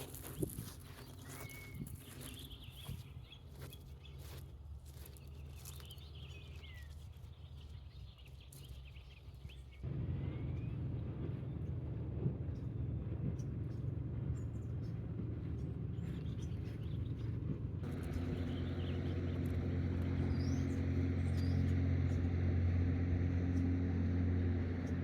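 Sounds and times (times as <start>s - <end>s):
birds chirping: 0.0s - 25.0s
steady low rumble: 9.5s - 25.0s.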